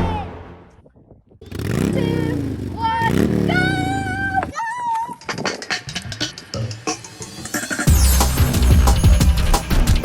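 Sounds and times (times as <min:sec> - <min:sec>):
electronic music with bass beat: 0:04.5 - 0:10.0.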